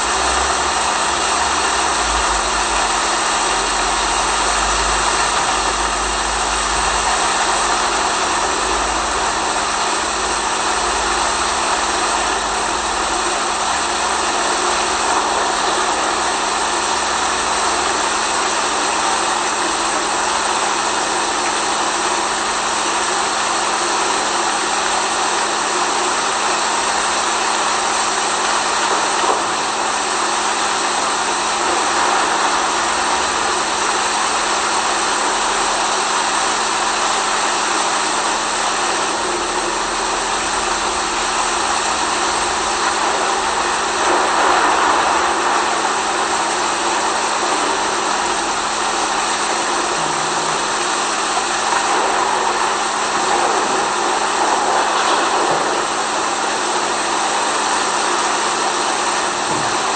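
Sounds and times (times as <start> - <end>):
steady hum: 0.0 - 59.9
steady rain hiss: 0.0 - 59.9.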